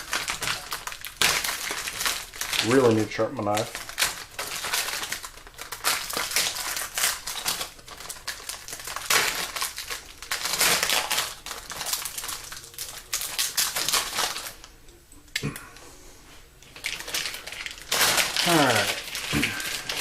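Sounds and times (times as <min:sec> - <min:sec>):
plastic wire loom crinkling: 0:00.0 - 0:14.7, 0:16.6 - 0:20.0.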